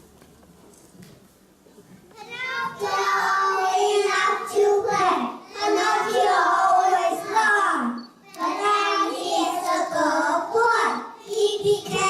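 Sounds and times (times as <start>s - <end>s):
child singing: 2.2s - 12.0s.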